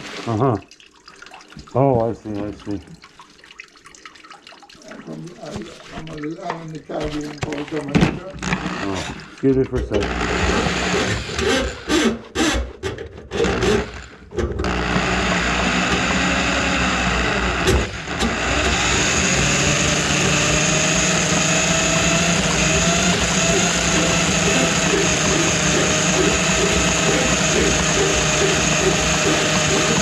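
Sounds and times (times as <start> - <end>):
drain cleaning machine motor: 5.0 - 11.6, 13.4 - 30.0.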